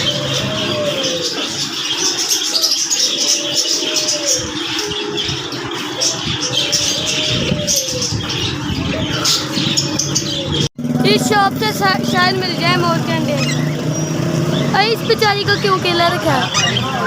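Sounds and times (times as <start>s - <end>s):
low drawn-out bird call: 0.0s - 17.0s
small birds chirping and twittering: 0.0s - 17.0s.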